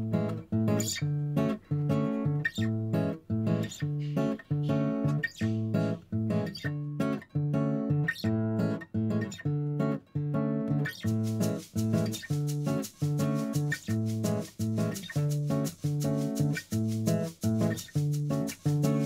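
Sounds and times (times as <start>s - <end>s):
strummed acoustic guitar: 0.0s - 19.0s.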